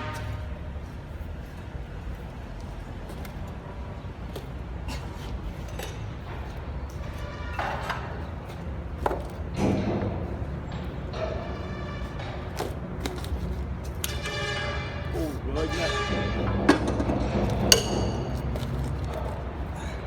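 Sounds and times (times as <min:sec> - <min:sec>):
sharp metallic knocks and clanks: 0:05.6 - 0:20.0
steady low rumble: 0:08.3 - 0:20.0.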